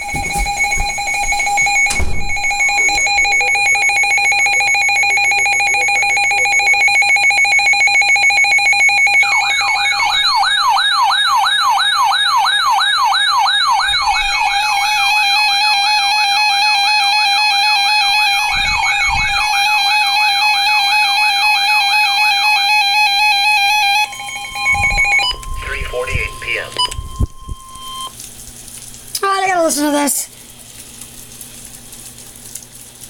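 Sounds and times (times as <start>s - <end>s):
steady electronic alert tone: 0.0s - 6.4s, 18.0s - 19.8s, 23.8s - 28.1s
warbling siren-like tone: 0.0s - 28.1s.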